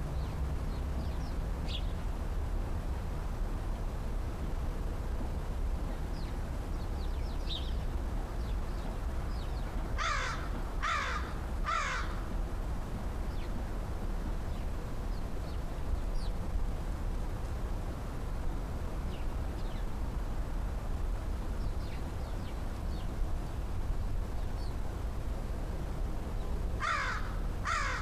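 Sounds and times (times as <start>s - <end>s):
steady low background hum: 0.0s - 28.0s
crow cawing: 10.0s - 12.3s, 26.8s - 28.0s.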